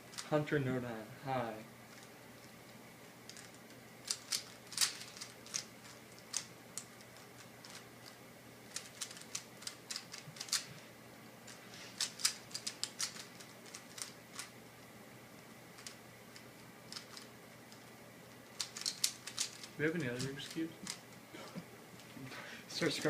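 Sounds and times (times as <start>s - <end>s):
plastic puzzle cube clicking: 3.3s - 10.7s, 12.0s - 14.5s, 15.8s - 17.3s, 18.5s - 19.7s.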